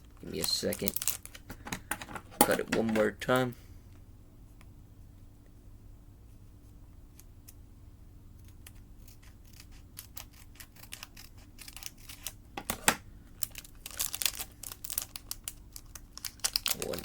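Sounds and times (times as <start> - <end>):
foil crinkling: 0.3 - 1.4, 13.4 - 17.0
scissors snipping foil wrapper: 0.4 - 1.4, 9.1 - 12.4, 13.4 - 17.0.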